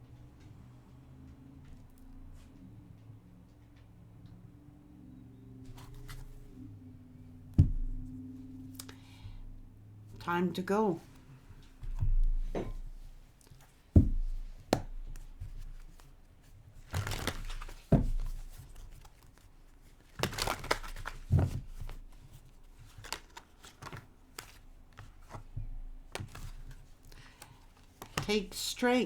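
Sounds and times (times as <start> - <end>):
cards knocking on a surface: 7.6 - 8.1
cards riffling: 16.8 - 19.4, 20.0 - 22.1, 22.7 - 25.4, 26.1 - 28.3.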